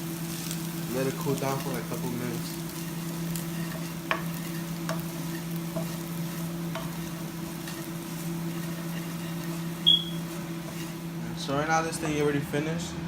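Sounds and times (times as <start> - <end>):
eggs sizzling in oil: 0.0 - 12.2
kitchen fan humming: 0.0 - 13.0
utensil tapping a pan: 3.5 - 7.9
sharp high ping: 9.8 - 10.2.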